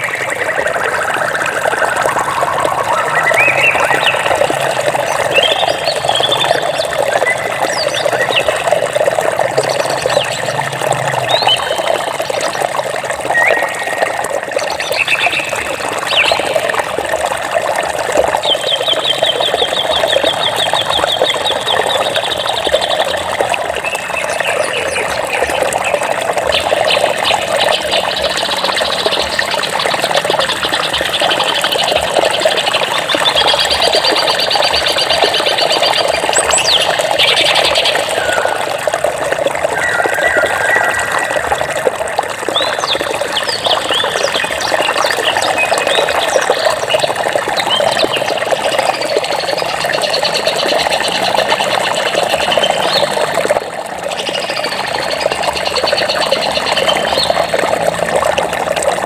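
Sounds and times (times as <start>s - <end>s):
running water: 0.0s - 59.0s
birds chirping and calling: 1.1s - 10.6s, 23.8s - 38.8s, 39.6s - 41.6s.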